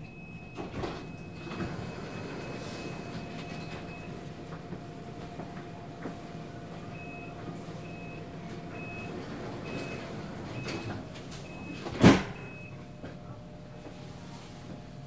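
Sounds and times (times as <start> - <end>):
door warning beeps: 0.0 - 4.2, 6.9 - 12.9
train carriage hum: 0.0 - 15.0
sliding doors shutting thump: 9.2 - 12.5.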